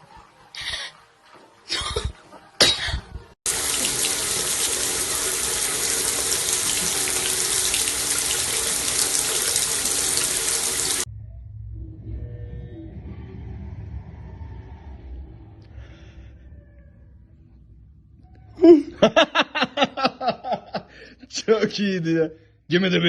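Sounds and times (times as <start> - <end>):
tap water running: 3.4 - 11.1.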